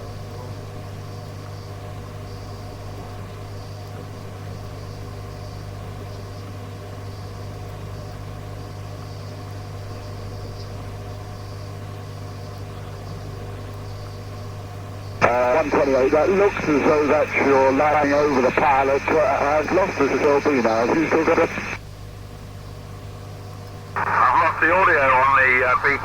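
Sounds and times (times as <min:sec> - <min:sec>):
radio receiver hum and hiss: 0:12.6 - 0:21.9, 0:23.4 - 0:26.0.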